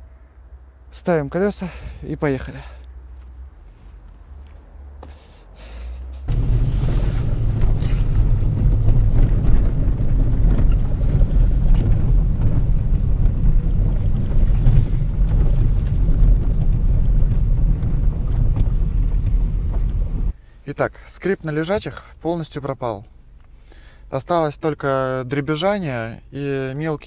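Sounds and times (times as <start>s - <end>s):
road and tyre rumble: 0.0s - 20.6s
car front end rattling: 6.3s - 20.4s.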